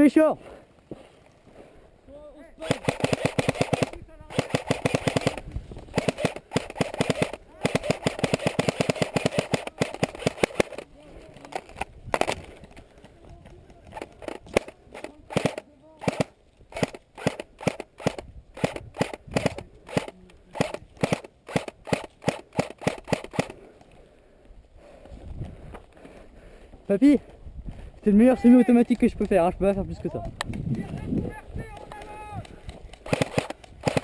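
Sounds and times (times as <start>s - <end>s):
airsoft rifle shots: 2.6s - 12.4s, 13.9s - 23.6s, 32.9s - 34.0s.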